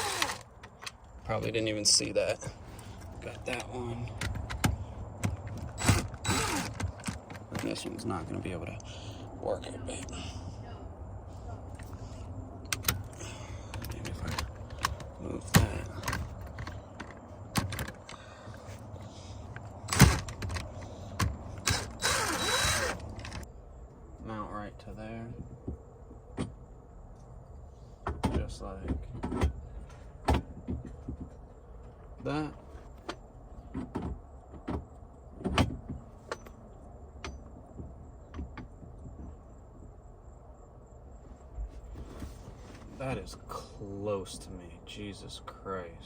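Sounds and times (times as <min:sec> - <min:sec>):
clicks and knocks on steering column: 0:04.1 - 0:07.7, 0:13.7 - 0:18.2, 0:32.8 - 0:36.5.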